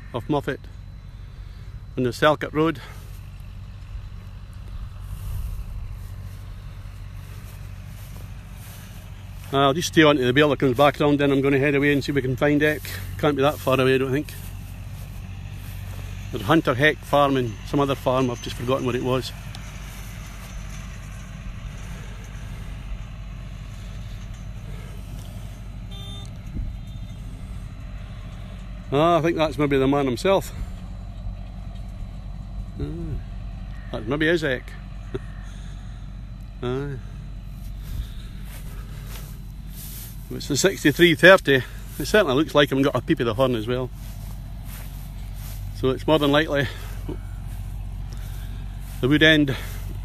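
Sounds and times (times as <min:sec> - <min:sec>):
tractor engine rumbling: 0:00.0 - 0:50.0
short clear beep: 0:25.9 - 0:27.2.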